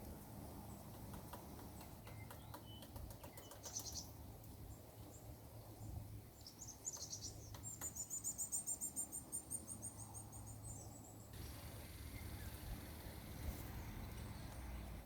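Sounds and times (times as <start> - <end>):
woodpecker calling: 0.9 - 4.2, 6.4 - 14.5.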